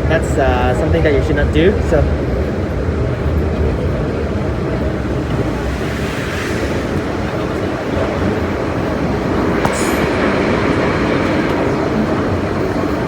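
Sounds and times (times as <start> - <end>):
train wheels rumbling on track: 0.0 - 13.0.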